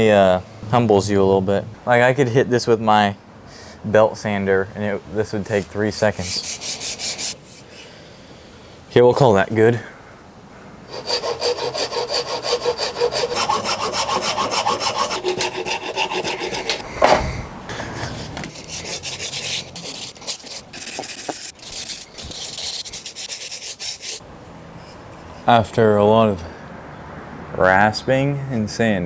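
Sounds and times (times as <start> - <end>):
rasp and sandpaper on wood: 5.5 - 7.9, 10.9 - 16.8, 18.0 - 24.2.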